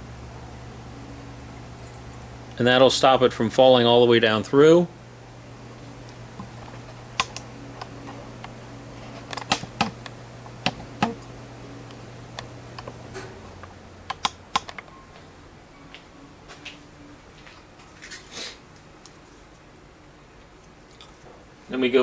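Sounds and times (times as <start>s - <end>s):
faint steady hum: 0.0s - 22.0s
small lamp parts clicking: 7.1s - 8.6s, 9.2s - 15.0s.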